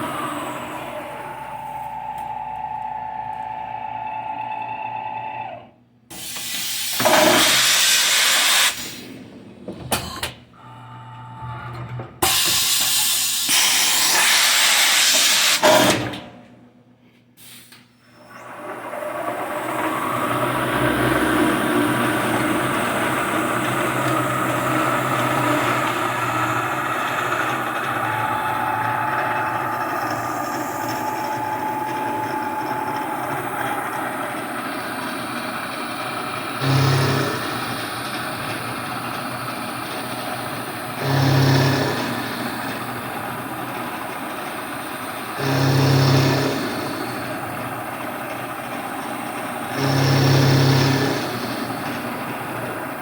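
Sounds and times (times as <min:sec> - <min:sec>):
milling machine cutting steel: 0:18.4 - 0:53.0
short low hums: 0:19.8 - 0:43.9, 0:45.3 - 0:52.6.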